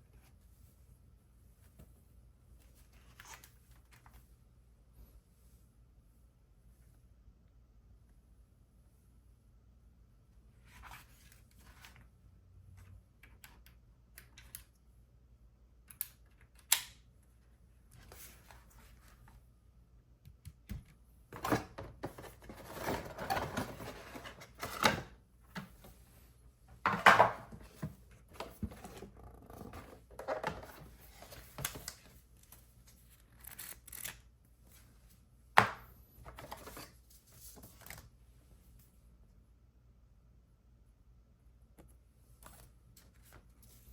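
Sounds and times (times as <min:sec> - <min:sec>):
packaging rustling and scraping: 0:21.4 - 0:25.1.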